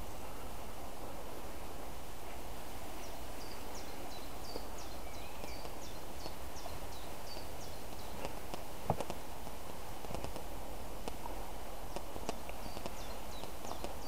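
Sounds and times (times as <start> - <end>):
steady background noise: 0.0 - 14.0
small bird chirping: 3.0 - 9.2, 11.9 - 14.0
sharp clicks: 7.3 - 9.2, 10.0 - 11.2, 11.9 - 14.0.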